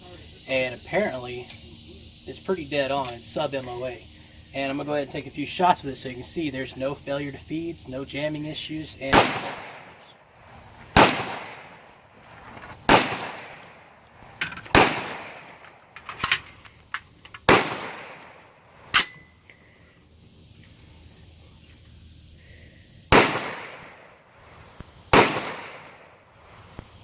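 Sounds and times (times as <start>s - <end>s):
rifle shots with ringing echo: 9.0s - 10.2s, 10.9s - 12.0s, 12.9s - 14.0s, 14.7s - 15.9s, 17.4s - 19.2s, 23.1s - 24.2s, 25.1s - 26.2s.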